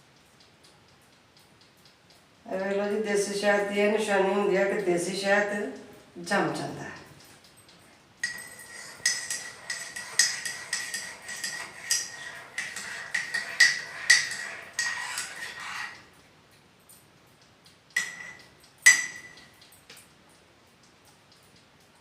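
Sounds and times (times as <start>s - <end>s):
spoon clinking against cup: 8.2s - 16.0s, 18.0s - 19.5s.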